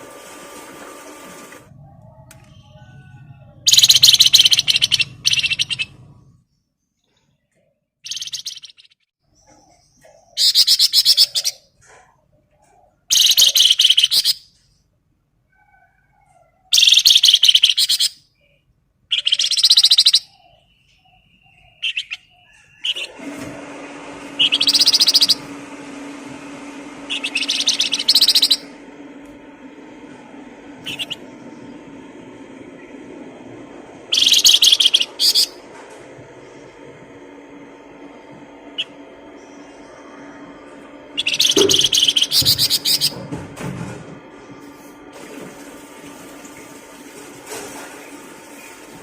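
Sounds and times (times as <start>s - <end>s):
songbird trilling: 3.6s - 5.9s, 8.0s - 11.6s, 13.1s - 14.5s, 16.7s - 18.2s, 19.1s - 23.1s, 24.4s - 25.4s, 27.1s - 28.7s, 30.9s - 31.2s, 34.1s - 35.6s, 41.1s - 43.2s
steady low hum: 24.0s - 46.8s.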